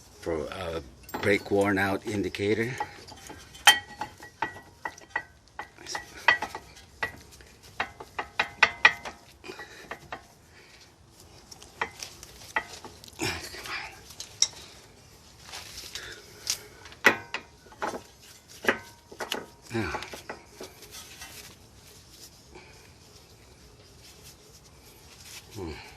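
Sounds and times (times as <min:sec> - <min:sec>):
metal brake pads clinking: 0:00.9 - 0:10.3.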